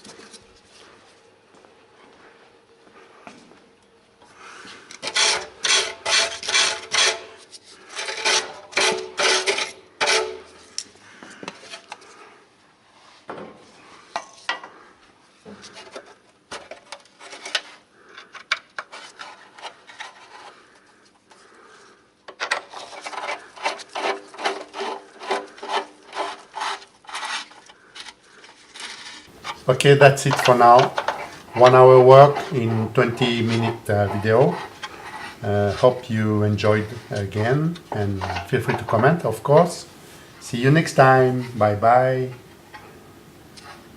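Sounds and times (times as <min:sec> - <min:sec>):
rasping scraping strokes: 0:04.5 - 0:10.8, 0:18.8 - 0:43.9.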